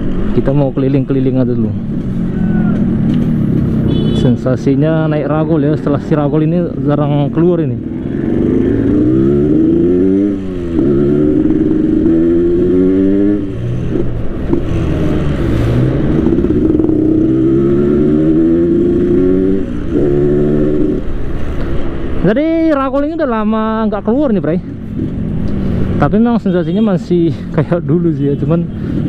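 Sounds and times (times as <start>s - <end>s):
motorcycle engine revving: 6.8s - 22.2s.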